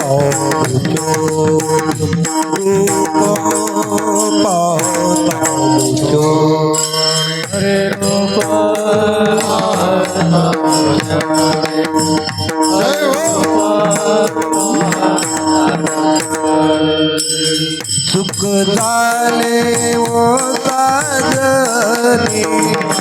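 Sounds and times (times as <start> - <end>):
drum strokes: 7.5 - 16.5
held melodic notes: 12.6 - 14.2.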